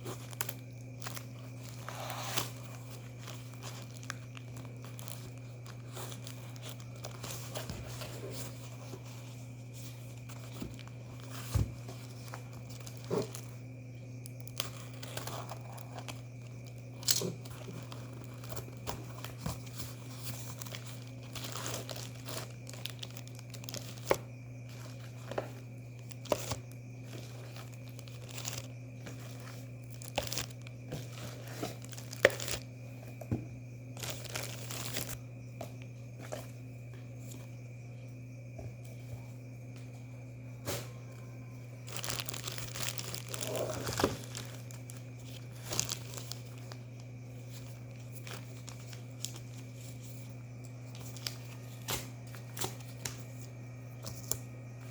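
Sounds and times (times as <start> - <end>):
steady low hum: 0.0 - 54.9
packaging crinkling and tearing: 0.1 - 8.7, 10.0 - 13.6, 14.2 - 32.6, 34.0 - 35.2, 41.8 - 46.8, 47.4 - 50.0.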